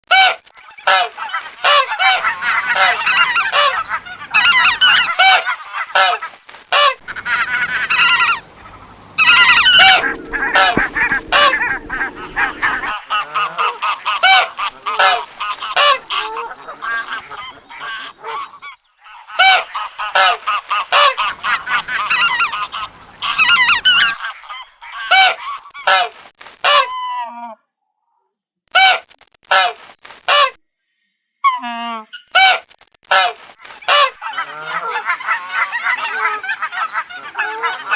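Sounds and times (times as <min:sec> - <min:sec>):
geese honking: 0:00.9 - 0:06.1, 0:06.8 - 0:18.6, 0:19.4 - 0:26.0, 0:33.9 - 0:37.9.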